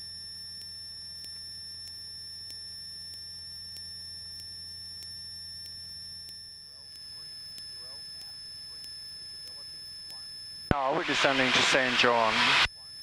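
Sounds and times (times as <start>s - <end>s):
faint ticks: 0.0s - 10.4s
high-pitched electrical whine: 3.6s - 13.0s.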